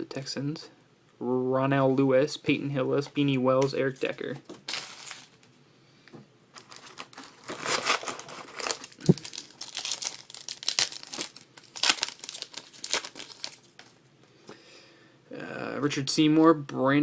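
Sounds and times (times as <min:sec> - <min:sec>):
foil wrapper crinkling and tearing: 0:04.7 - 0:05.4, 0:06.6 - 0:14.0.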